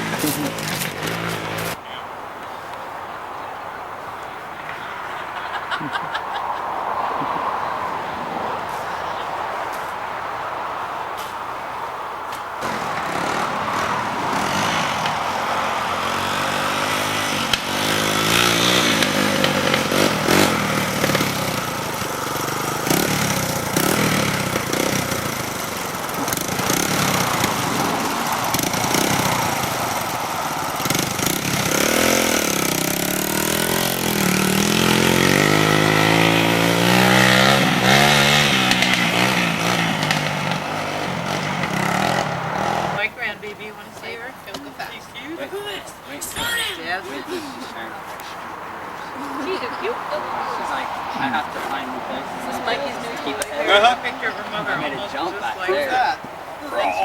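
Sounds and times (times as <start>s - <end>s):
engine revving: 0.0s - 1.8s, 12.6s - 44.4s, 49.1s - 57.0s.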